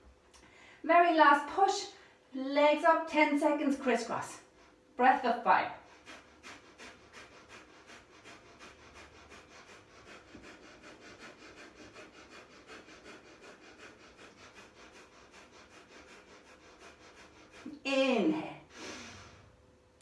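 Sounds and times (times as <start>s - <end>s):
rapid breathing through nose: 5.8s - 17.9s, 18.7s - 19.6s.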